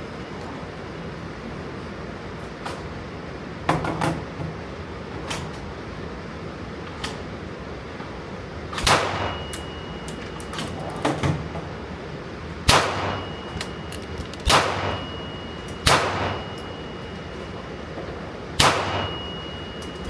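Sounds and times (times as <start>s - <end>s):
gunshots with echo: 12.7s - 13.3s, 14.5s - 15.1s, 15.8s - 16.4s, 18.6s - 19.2s.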